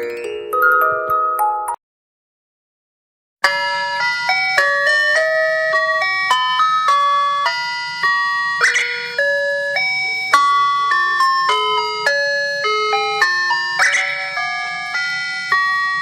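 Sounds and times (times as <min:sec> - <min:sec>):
electronic chime melody: 0:03.4 - 0:16.0.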